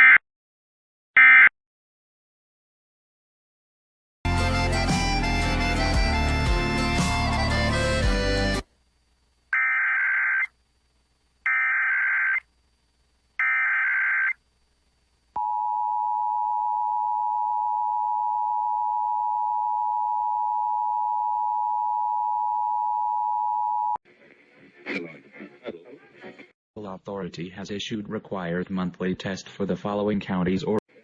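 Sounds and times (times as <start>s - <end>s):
music: 4.3s - 8.7s.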